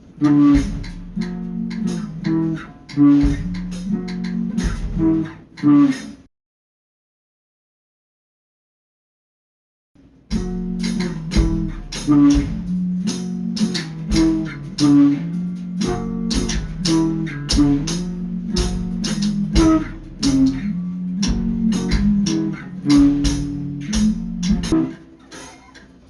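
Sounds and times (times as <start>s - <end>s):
bass and guitar music with beat: 0.0s - 6.3s, 10.3s - 26.0s.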